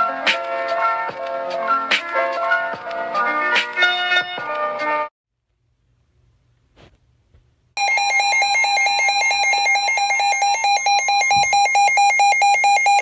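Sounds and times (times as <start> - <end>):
pulsing electronic alarm tone: 7.8 - 13.0.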